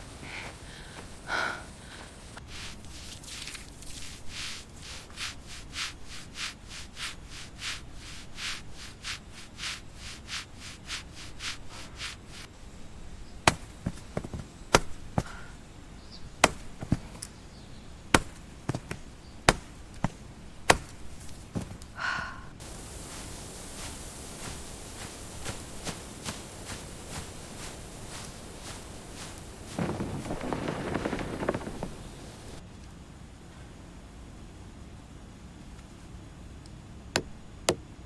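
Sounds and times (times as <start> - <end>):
axe chopping wood: 13.3 - 22.3.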